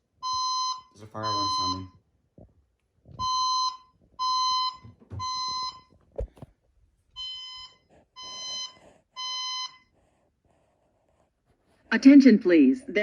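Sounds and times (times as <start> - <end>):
fire alarm horn blasts: 0.2 - 1.9.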